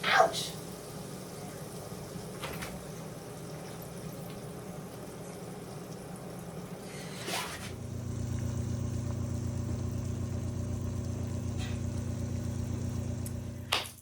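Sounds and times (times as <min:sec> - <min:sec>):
appliance motor humming: 0:07.6 - 0:14.0.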